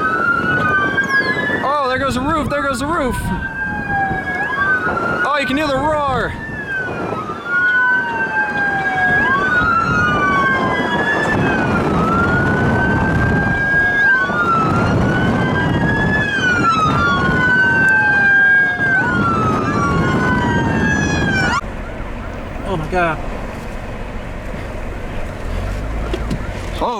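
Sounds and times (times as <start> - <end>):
sirens wailing: 0.0 - 26.9
roar of tornado: 8.0 - 26.9.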